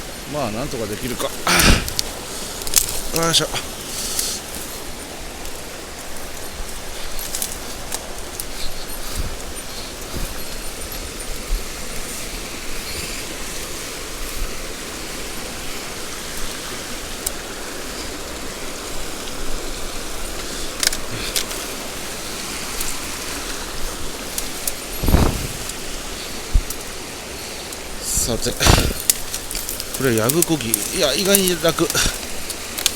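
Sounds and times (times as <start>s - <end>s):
stream water running: 0.0s - 32.9s
low thump: 25.0s - 25.7s.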